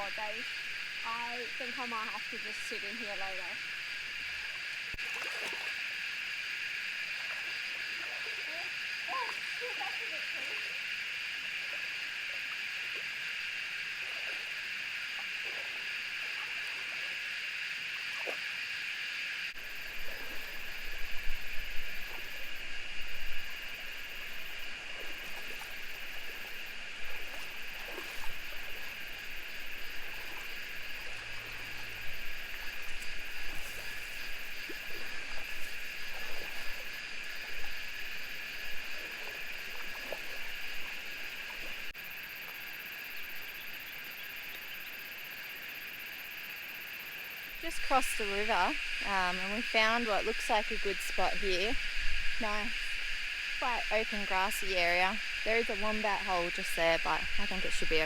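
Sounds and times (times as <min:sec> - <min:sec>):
splashes and knocks: 0:05.0 - 0:05.8, 0:24.8 - 0:41.9.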